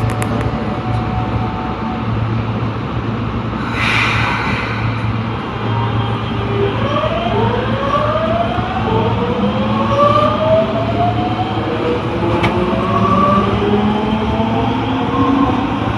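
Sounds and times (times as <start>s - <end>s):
low hum of running train: 3.6s - 6.4s.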